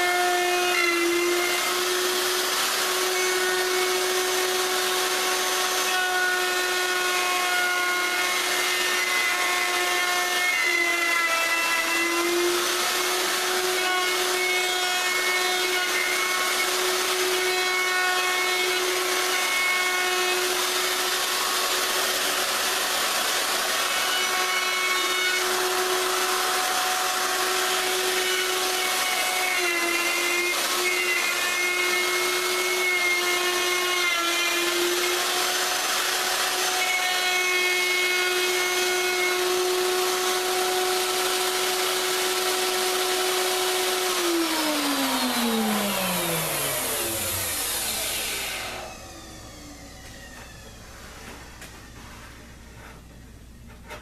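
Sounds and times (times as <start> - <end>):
electric router cutting wood: 0.0 - 53.0.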